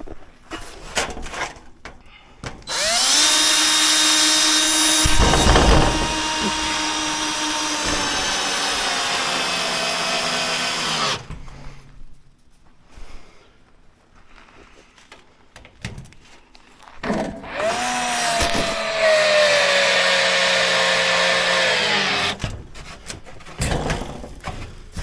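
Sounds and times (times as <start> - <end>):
electric power tool whining: 2.7 - 11.3, 17.5 - 22.4.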